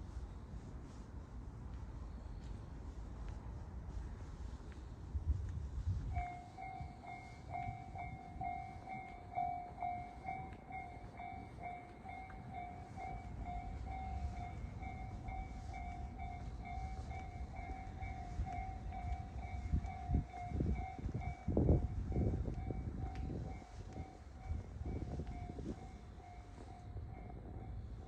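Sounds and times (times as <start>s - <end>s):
level crossing alarm dinging: 6.2s - 27.9s.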